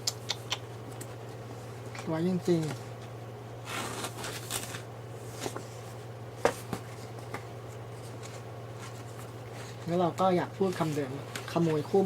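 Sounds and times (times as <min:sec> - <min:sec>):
low electrical hum: 0:00.0 - 0:12.0
plastic and paper packaging rustling: 0:03.6 - 0:12.0.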